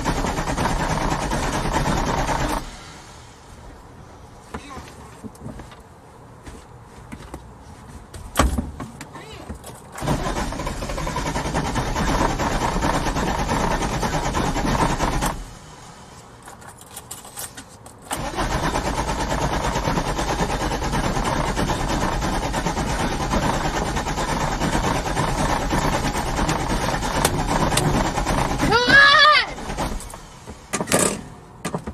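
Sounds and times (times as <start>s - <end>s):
car engine cranking: 0.0s - 3.2s, 9.7s - 15.6s, 16.4s - 31.2s.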